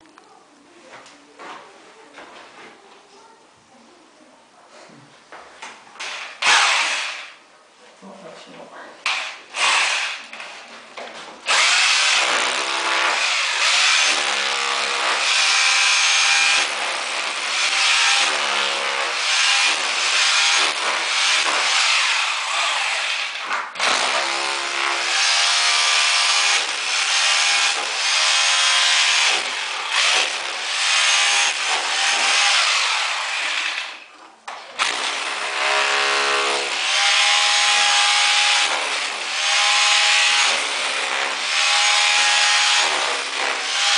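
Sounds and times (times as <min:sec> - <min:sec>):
power saw cutting: 0:11.5 - 0:34.1, 0:34.8 - 0:43.9.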